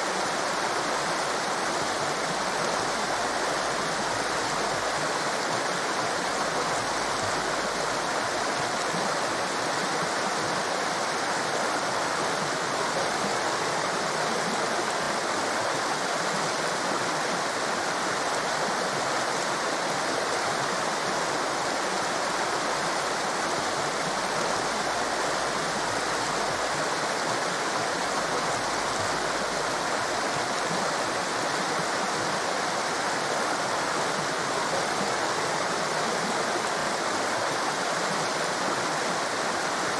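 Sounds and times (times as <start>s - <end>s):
water rushing over rocks: 0.0s - 39.9s.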